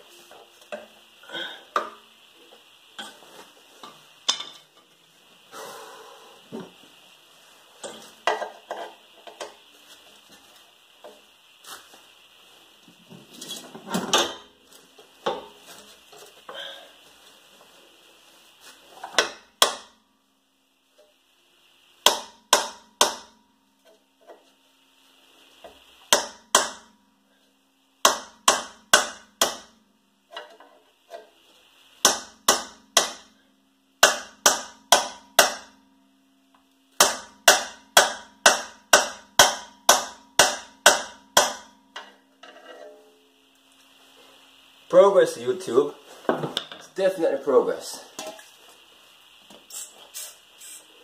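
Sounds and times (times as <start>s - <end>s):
hammer striking chisel on steel: 22.0s - 23.4s, 26.1s - 26.9s, 28.0s - 29.7s, 32.0s - 33.3s, 34.0s - 35.8s, 37.0s - 41.7s.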